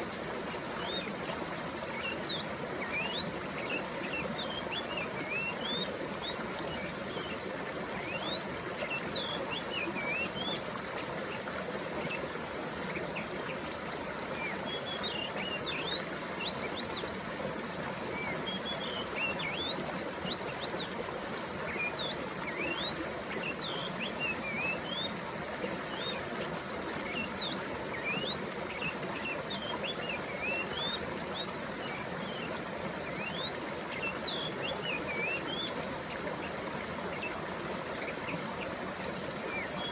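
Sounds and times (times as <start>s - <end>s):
stream water flowing: 0.0s - 39.9s
small birds chirping: 11.3s - 25.1s, 25.9s - 39.9s.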